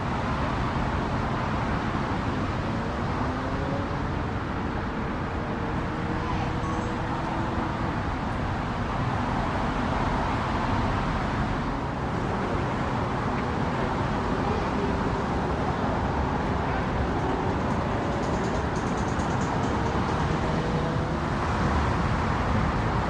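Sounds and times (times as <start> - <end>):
engine low rumble: 0.0 - 23.0.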